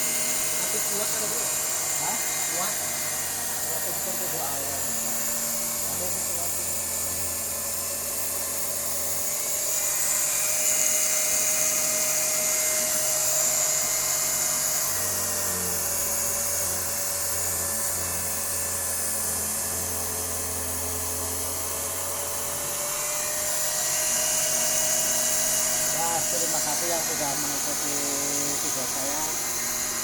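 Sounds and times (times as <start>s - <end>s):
electric cutting machine whining: 0.0s - 30.0s.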